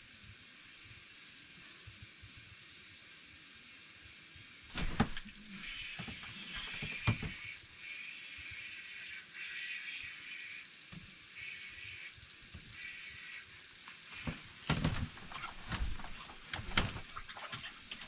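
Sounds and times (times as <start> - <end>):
fishing reel whirring and clicking: 4.8 - 16.5.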